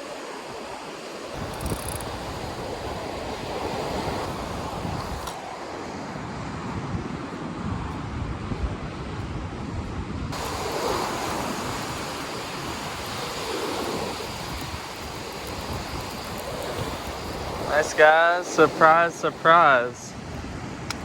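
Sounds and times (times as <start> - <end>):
ocean surf breaking: 0.0 - 9.5, 10.3 - 21.0
wind buffeting microphone: 1.3 - 21.0.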